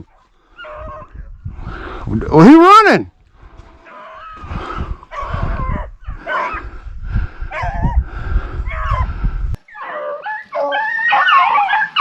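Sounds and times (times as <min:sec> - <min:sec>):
hounds baying: 0:00.0 - 0:01.2, 0:03.8 - 0:06.8, 0:07.5 - 0:08.0, 0:08.6 - 0:12.0.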